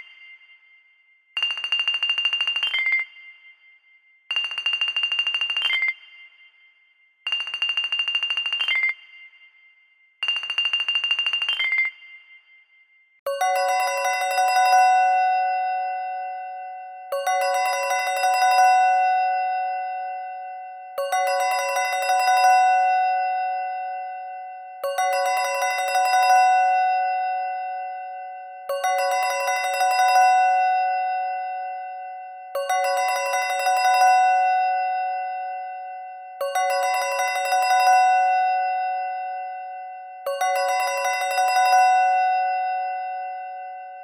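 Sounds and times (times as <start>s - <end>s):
bell-like chime ringtone: 13.3s - 44.0s.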